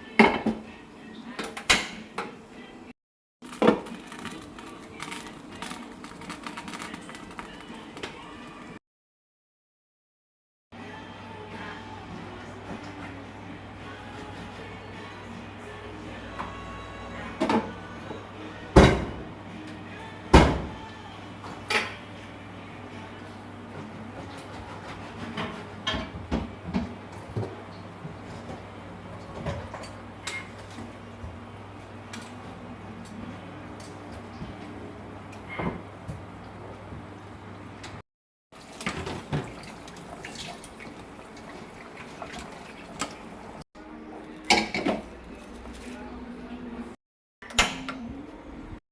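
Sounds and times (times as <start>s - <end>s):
water running into sink: 38.6s - 43.6s.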